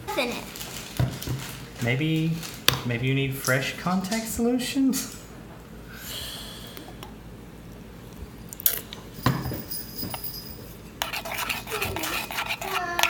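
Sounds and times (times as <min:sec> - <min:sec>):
kitchen utensils clinking: 0:08.7 - 0:13.0.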